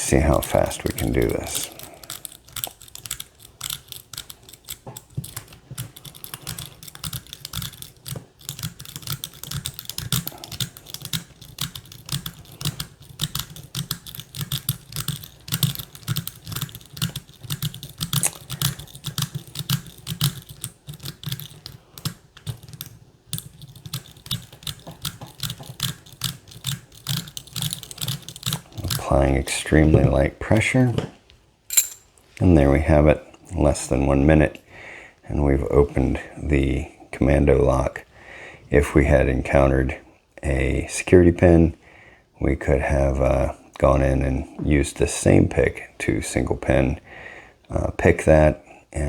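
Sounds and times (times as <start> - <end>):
lock pick raking metallic clicks: 0.6 - 29.0, 31.7 - 32.1.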